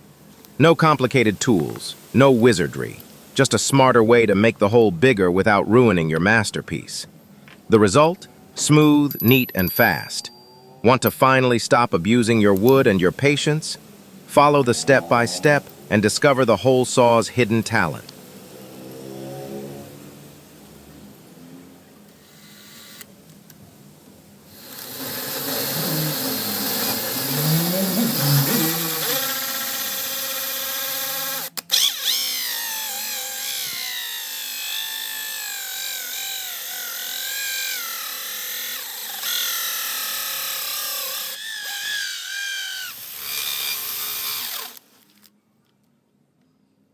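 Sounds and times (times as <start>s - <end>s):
electric drill cutting wood: 22.3s - 23.1s, 24.5s - 44.8s.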